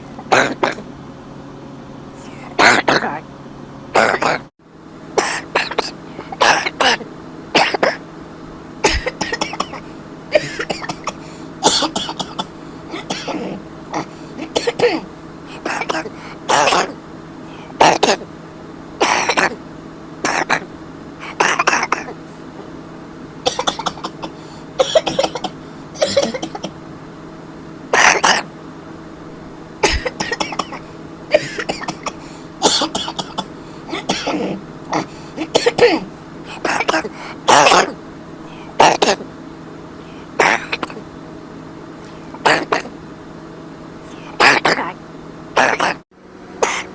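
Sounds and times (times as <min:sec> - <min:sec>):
steady low hum: 0:00.0 - 0:46.9
man coughing: 0:00.2 - 0:00.8, 0:02.5 - 0:03.2, 0:04.0 - 0:04.5, 0:05.2 - 0:07.0, 0:07.6 - 0:08.0, 0:08.8 - 0:17.0, 0:17.8 - 0:18.2, 0:19.0 - 0:19.6, 0:20.2 - 0:22.2, 0:23.4 - 0:26.7, 0:28.0 - 0:28.5, 0:29.8 - 0:38.0, 0:38.7 - 0:39.2, 0:46.6 - 0:46.9
throat-clearing: 0:00.2 - 0:00.9, 0:02.2 - 0:03.2, 0:04.0 - 0:04.5, 0:08.8 - 0:17.0, 0:20.2 - 0:22.2, 0:23.4 - 0:26.7, 0:28.0 - 0:28.5, 0:29.8 - 0:38.0, 0:40.4 - 0:41.0, 0:42.4 - 0:43.0, 0:44.3 - 0:45.0, 0:45.6 - 0:46.0.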